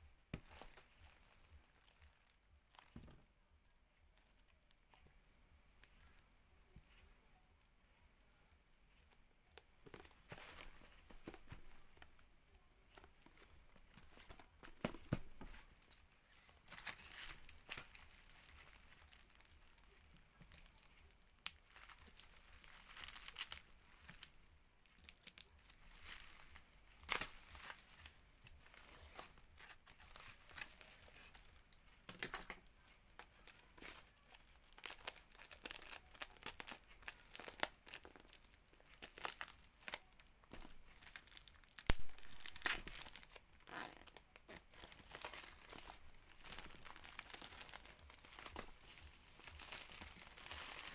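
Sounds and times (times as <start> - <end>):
packaging tearing and crinkling: 20.5 - 24.3, 25.0 - 31.4, 33.4 - 50.9.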